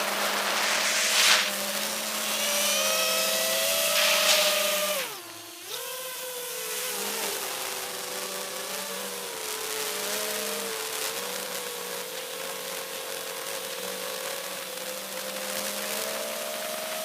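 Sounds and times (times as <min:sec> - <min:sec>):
wind rush: 0:00.0 - 0:03.0
drone motors whining: 0:00.0 - 0:05.9.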